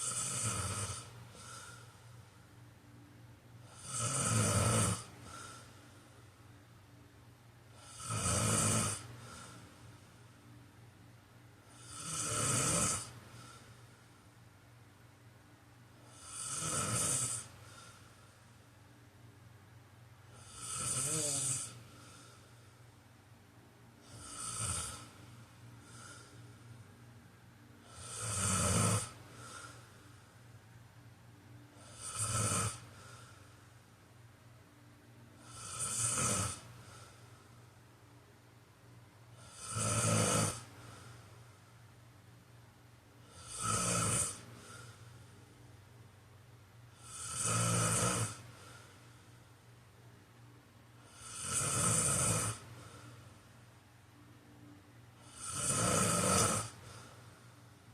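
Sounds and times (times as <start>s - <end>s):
person snoring: 0.0s - 2.0s, 3.7s - 5.8s, 7.7s - 9.6s, 11.7s - 13.8s, 16.0s - 18.1s, 20.3s - 22.6s, 24.0s - 26.8s, 27.8s - 30.1s, 31.8s - 33.6s, 35.4s - 37.3s, 39.4s - 41.2s, 43.2s - 45.1s, 46.9s - 48.9s, 51.0s - 53.2s, 55.2s - 57.5s.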